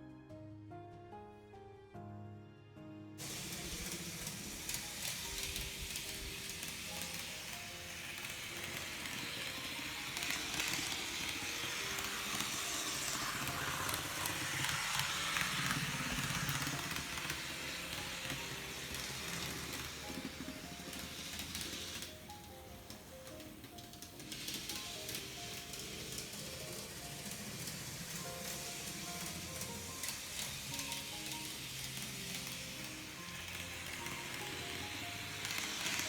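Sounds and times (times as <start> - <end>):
background music: 0.0 - 36.0
model train motor buzzing: 3.2 - 36.0.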